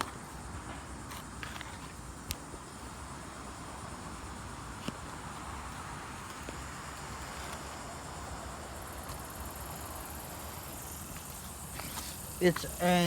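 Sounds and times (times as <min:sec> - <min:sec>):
air conditioner unit humming: 0:07.7 - 0:13.0.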